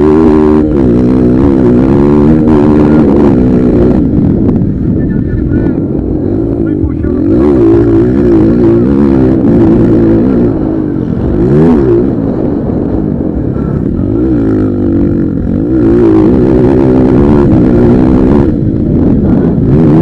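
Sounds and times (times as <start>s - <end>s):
motorcycle engines revving: 0.0s - 20.0s.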